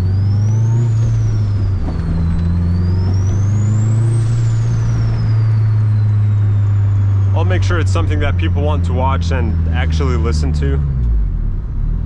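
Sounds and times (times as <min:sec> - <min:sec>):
car engine drone: 0:00.0 - 0:12.0.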